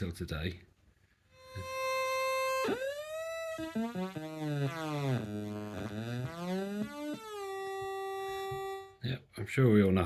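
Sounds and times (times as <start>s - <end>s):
electronic tone changing pitch: 1.4s - 9.0s.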